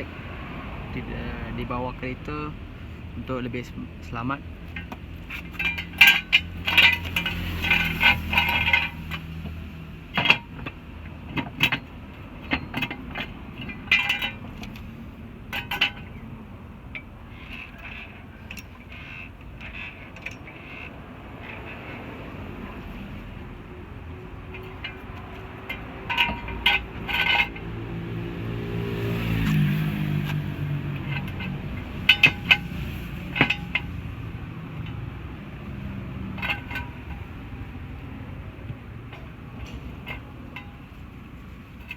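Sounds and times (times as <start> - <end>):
car jack metallic clanks: 3.0 - 41.9.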